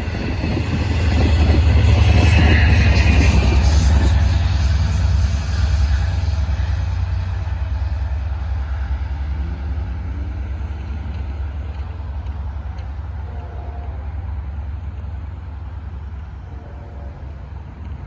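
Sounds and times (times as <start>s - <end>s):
passing diesel train rumble: 0.0s - 18.0s.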